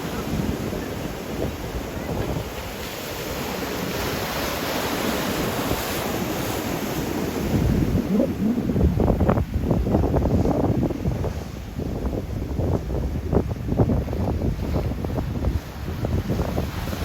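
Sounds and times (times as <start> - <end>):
ocean surf breaking: 0.0 - 11.6
wind buffeting microphone: 0.0 - 17.0.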